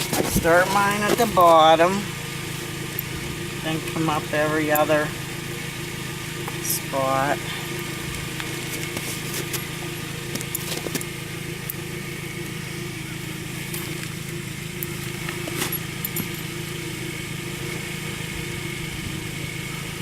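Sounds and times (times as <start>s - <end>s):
car engine idling: 0.0s - 20.0s
tire chain links clicking: 13.6s - 16.7s.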